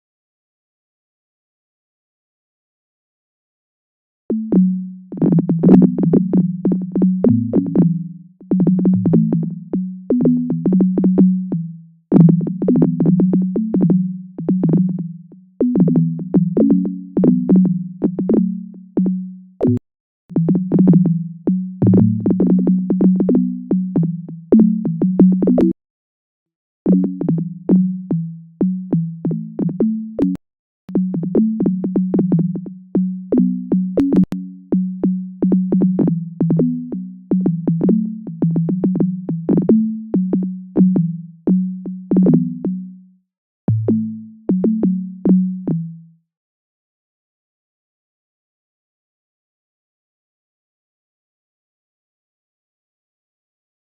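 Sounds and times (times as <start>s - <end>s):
low percussive synthesizer tones: 4.3s - 25.8s, 26.9s - 42.7s, 43.7s - 46.0s.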